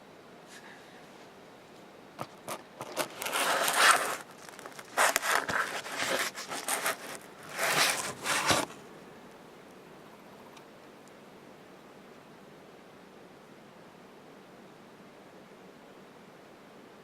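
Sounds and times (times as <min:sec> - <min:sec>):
gecko crunching a cricket: 0:02.2 - 0:08.9.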